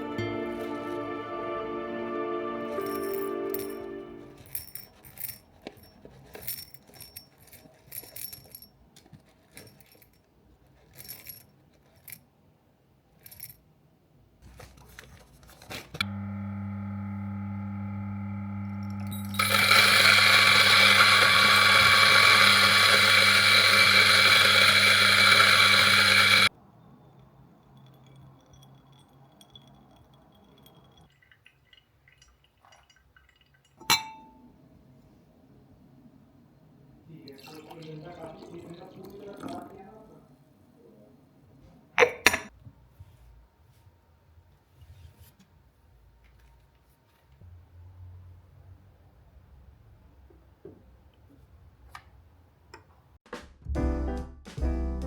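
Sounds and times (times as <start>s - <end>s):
cups and utensils clinking: 2.6s - 10.2s, 18.6s - 34.5s, 37.2s - 39.8s
coffee machine humming: 16.0s - 26.5s
coffee machine loud rough hiss: 18.6s - 26.5s.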